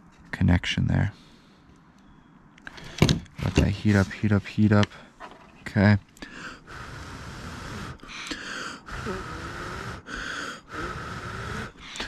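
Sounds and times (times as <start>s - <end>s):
person blowing puffs of air: 6.3s - 12.0s.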